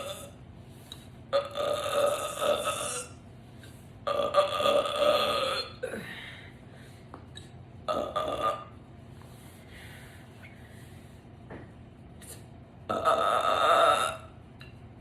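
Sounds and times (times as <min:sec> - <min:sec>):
woman burping loudly: 0:00.0 - 0:00.4, 0:01.4 - 0:03.2, 0:04.1 - 0:06.1, 0:07.9 - 0:08.7, 0:12.9 - 0:14.3.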